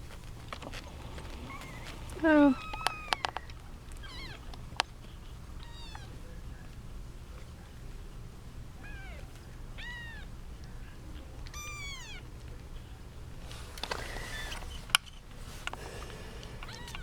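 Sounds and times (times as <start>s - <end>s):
rustling: 0.0s - 8.1s, 11.5s - 17.0s
kittens mewing: 0.4s - 6.2s, 8.7s - 10.4s, 11.1s - 12.4s, 14.0s - 14.6s, 16.1s - 17.0s.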